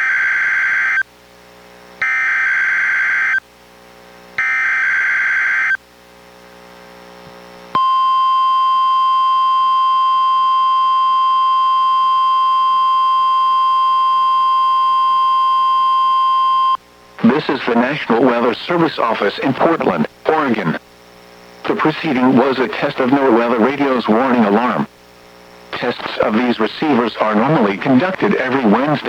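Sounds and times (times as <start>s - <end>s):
steady alarm tone: 0.0s - 1.0s, 2.0s - 3.4s, 4.4s - 5.8s, 7.8s - 20.8s.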